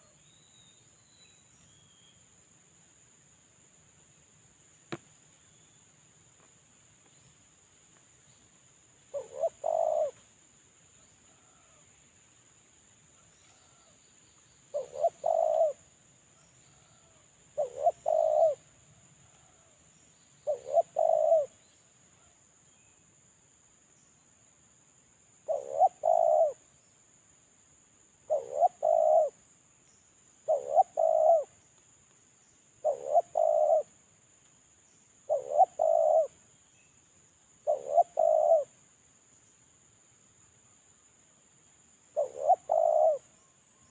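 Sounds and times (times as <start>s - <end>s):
dove cooing: 9.1s - 10.2s, 14.7s - 15.8s, 17.0s - 18.6s, 20.4s - 21.6s, 25.5s - 26.6s, 28.3s - 29.4s, 30.5s - 31.5s, 32.8s - 33.9s, 35.3s - 36.4s, 37.6s - 38.8s, 42.2s - 43.3s.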